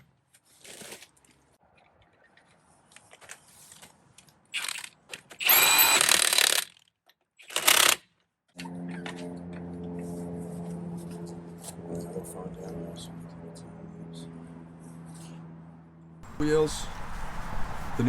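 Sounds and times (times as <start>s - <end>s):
impact wrench whining: 4.6s - 6.8s, 7.4s - 8.0s.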